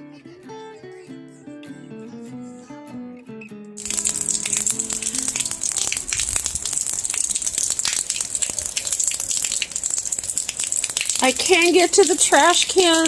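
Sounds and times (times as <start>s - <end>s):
heavy rain pouring: 3.8s - 13.0s.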